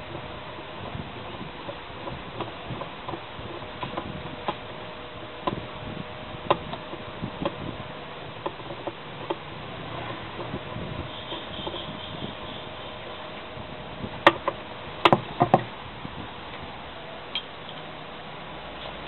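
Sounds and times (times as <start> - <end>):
faint steady hum: 0.0 - 19.0
light clicks and knocks: 14.2 - 15.7.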